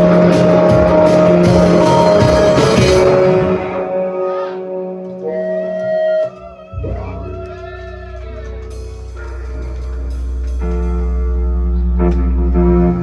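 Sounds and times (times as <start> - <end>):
live band instrumental music: 0.0 - 3.9
low drone: 0.0 - 5.4, 6.6 - 13.0.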